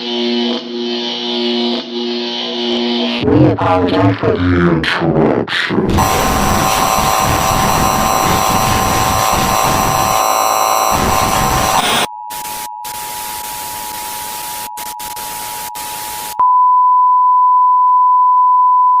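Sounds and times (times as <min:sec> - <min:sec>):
steady electronic tones: 0:05.6 - 0:16.4
loud static hiss: 0:05.9 - 0:16.4
pure test-tone beep: 0:06.0 - 0:19.0.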